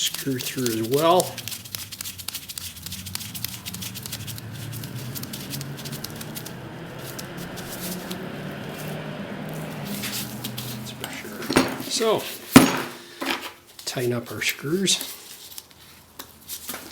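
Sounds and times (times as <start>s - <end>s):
low steady hum: 0.0s - 13.2s.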